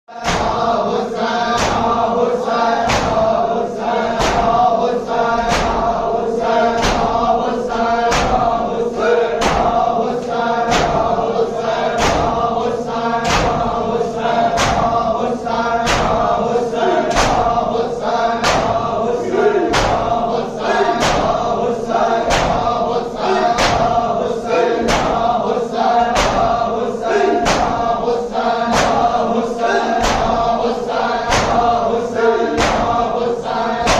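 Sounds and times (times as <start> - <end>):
men chanting in unison: 0.1 - 33.9
sharp even beat: 1.5 - 2.2, 7.9 - 8.6, 10.7 - 12.6, 13.2 - 15.2, 15.8 - 17.8, 18.4 - 28.0, 28.7 - 29.2, 31.3 - 33.1.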